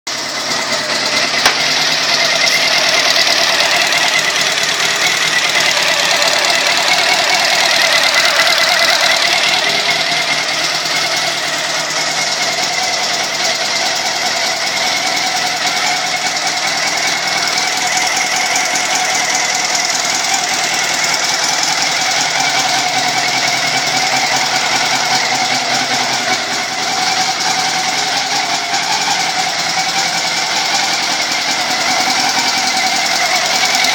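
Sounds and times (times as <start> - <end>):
engine knocking and ticking: 0.1 - 33.9
motorcycle engine running: 0.1 - 33.9.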